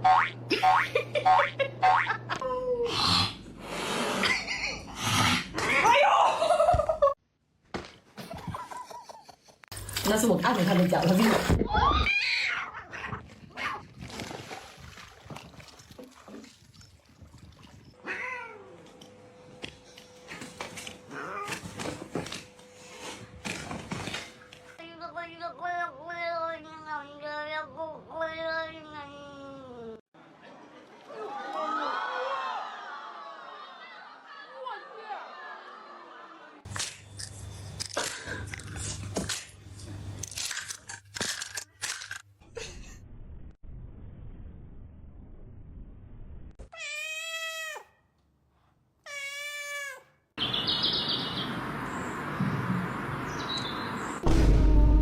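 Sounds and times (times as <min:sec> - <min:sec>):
cat meowing: 0:18.0 - 0:18.8, 0:46.7 - 0:47.9, 0:49.1 - 0:50.1
crunching and chewing: 0:36.7 - 0:42.2.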